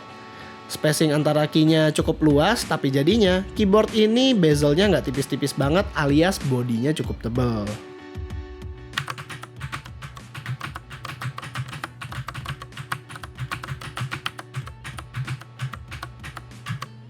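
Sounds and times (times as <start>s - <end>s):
background music: 0.0s - 17.0s
clicky keyboard typing: 9.0s - 17.0s.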